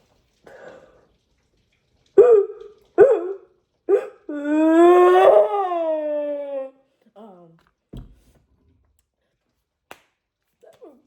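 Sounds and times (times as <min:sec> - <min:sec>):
dog yelping: 0:02.2 - 0:06.7
dog howling: 0:02.2 - 0:07.6.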